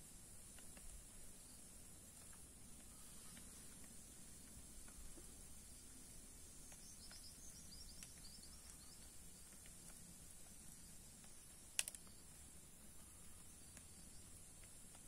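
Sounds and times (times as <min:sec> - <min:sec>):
high insect hiss: 0:00.0 - 0:15.0
small bird chirping: 0:00.4 - 0:15.0
sharp clicks: 0:06.6 - 0:12.4.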